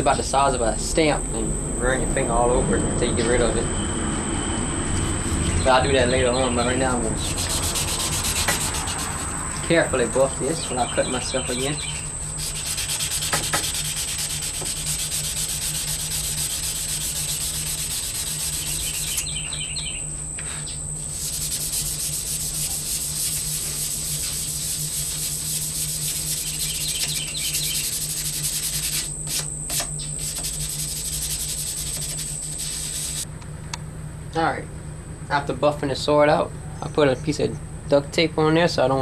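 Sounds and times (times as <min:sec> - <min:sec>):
high insect drone: 0:00.0 - 0:33.3
sandpaper rubbing on steel blade: 0:05.8 - 0:19.3, 0:20.4 - 0:33.2.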